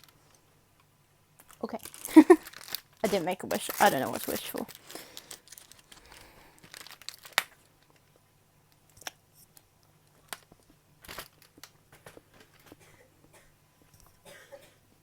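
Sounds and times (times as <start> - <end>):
packaging crinkling and clicking: 1.4 - 12.8.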